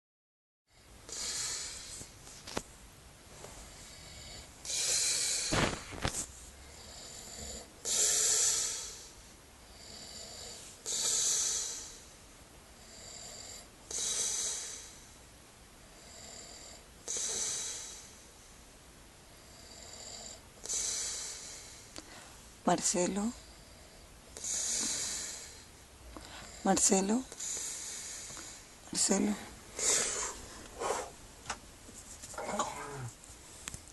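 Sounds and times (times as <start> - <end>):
soft breathing: 0.8 - 2.6, 3.3 - 15.2, 15.8 - 31.2
man snoring: 1.1 - 2.0, 6.7 - 9.1, 9.7 - 12.0, 12.8 - 15.0, 15.9 - 18.2, 19.4 - 21.7, 23.4 - 25.7, 32.4 - 33.1.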